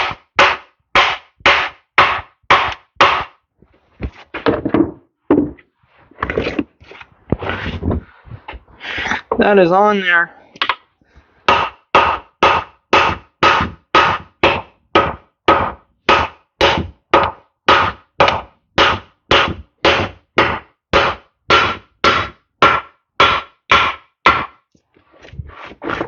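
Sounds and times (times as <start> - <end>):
hammer striking metal: 0.0 - 3.4, 11.5 - 24.6.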